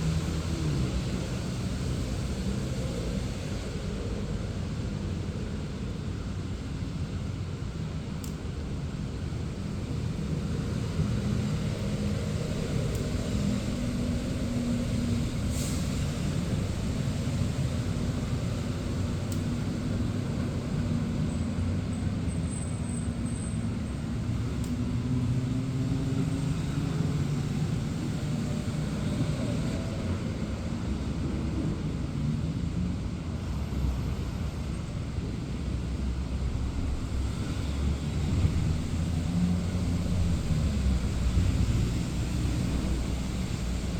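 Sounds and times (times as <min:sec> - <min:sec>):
steady rain: 0:00.0 - 0:43.9
cars driving past: 0:10.0 - 0:43.9.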